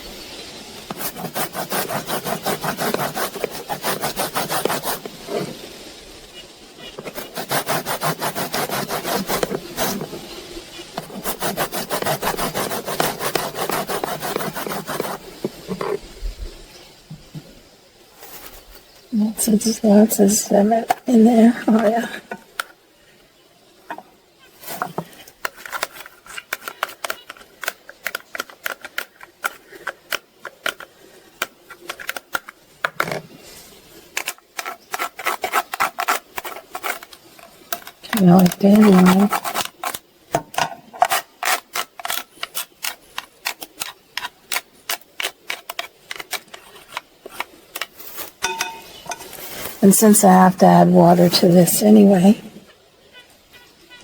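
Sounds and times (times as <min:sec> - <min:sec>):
grating on a hand grater: 0:00.9 - 0:05.5, 0:07.0 - 0:10.1, 0:11.0 - 0:15.3, 0:34.2 - 0:40.0
kitchen utensils clicking and scraping: 0:24.6 - 0:30.9, 0:34.2 - 0:49.8.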